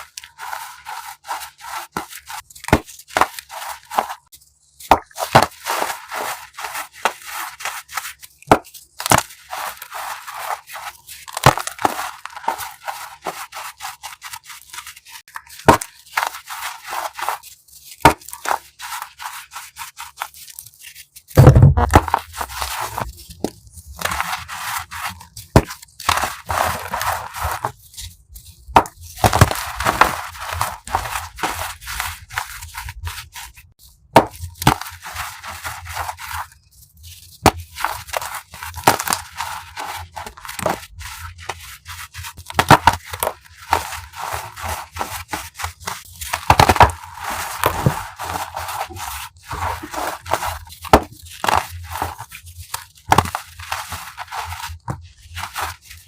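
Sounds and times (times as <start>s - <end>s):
chalk crushed by hand: 0.0s - 56.0s
heavy thump: 21.4s - 22.2s.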